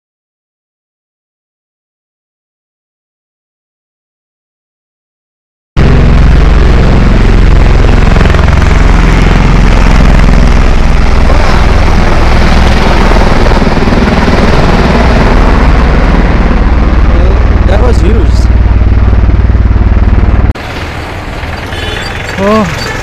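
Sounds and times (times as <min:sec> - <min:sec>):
road and wind noise: 0:05.8 - 0:23.0
vehicle engine rumble: 0:05.8 - 0:23.0.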